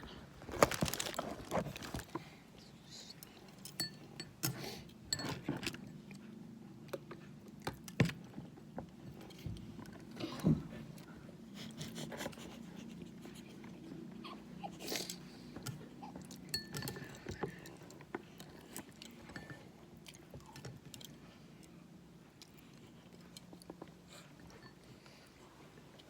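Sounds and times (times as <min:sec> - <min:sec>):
person chewing crunchy food: 0:00.5 - 0:02.2.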